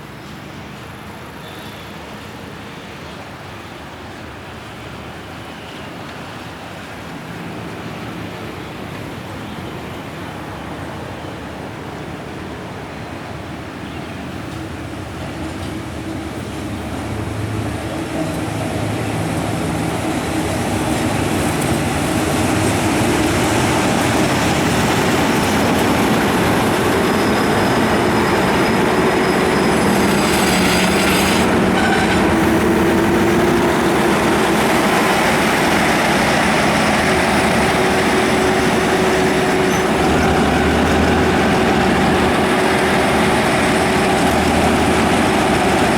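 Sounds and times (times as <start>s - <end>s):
train rumbling on tracks: 0.0s - 45.9s.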